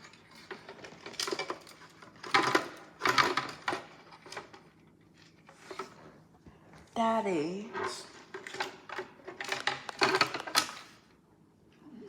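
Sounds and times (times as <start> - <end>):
plastic toy parts clattering: 0.0 - 4.7, 7.8 - 11.0.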